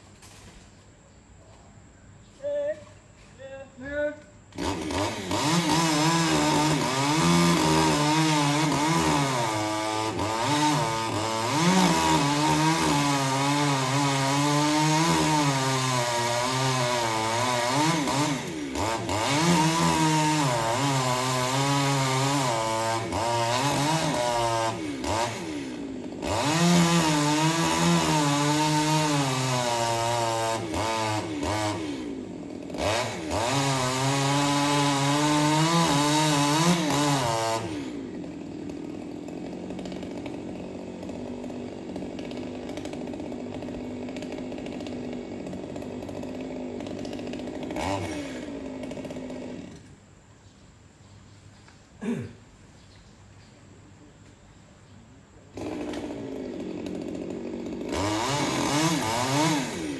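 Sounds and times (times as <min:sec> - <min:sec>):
chainsaw cutting wood: 0:03.2 - 0:50.1, 0:52.0 - 0:52.3, 0:55.5 - 0:59.9.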